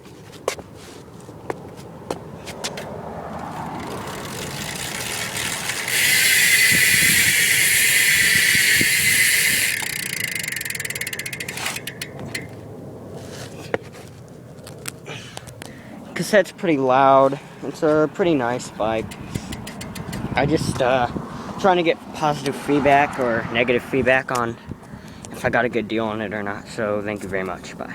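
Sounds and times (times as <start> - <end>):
bicycle hub freewheeling buzz: 3.4 - 12.8, 18.8 - 20.5.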